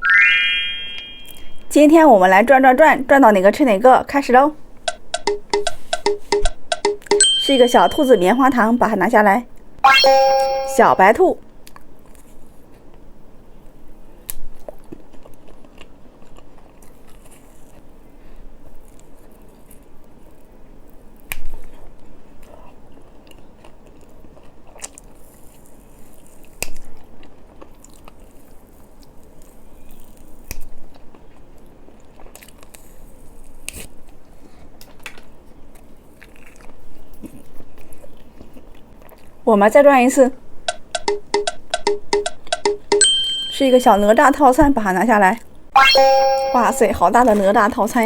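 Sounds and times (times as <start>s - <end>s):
chewing marshmallow candy: 11.7s - 39.5s.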